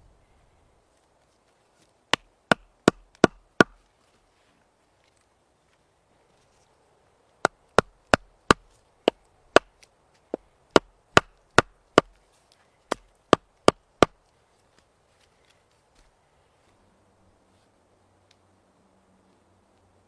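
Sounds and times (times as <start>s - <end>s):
sharp chopping strikes: 2.1s - 3.8s, 7.4s - 9.7s.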